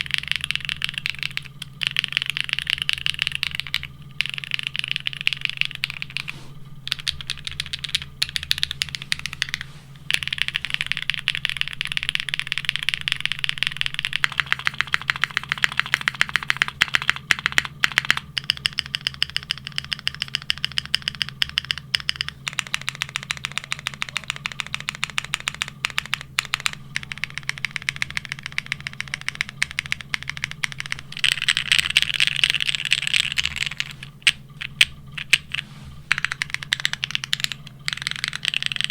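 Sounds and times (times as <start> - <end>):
mechanical keyboard typing: 0.0 - 6.3, 6.9 - 38.9.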